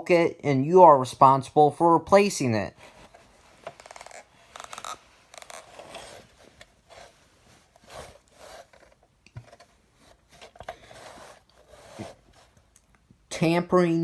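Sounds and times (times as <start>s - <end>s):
handling noises: 2.8s - 12.7s.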